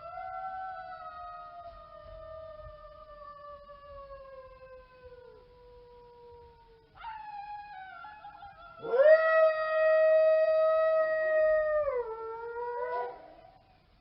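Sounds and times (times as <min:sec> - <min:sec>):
dog howling: 0:00.0 - 0:13.6.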